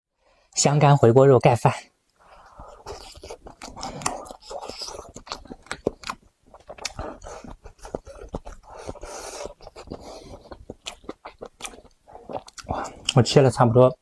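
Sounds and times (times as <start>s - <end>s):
close chewing and mouth sounds: 2.1s - 14.0s.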